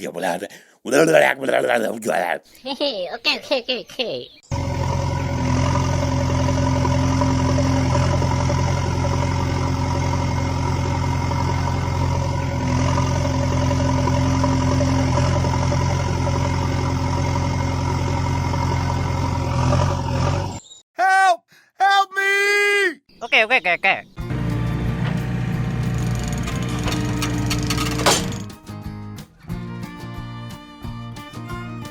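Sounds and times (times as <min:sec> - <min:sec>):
tractor engine idling: 0:04.5 - 0:20.5, 0:24.2 - 0:28.6.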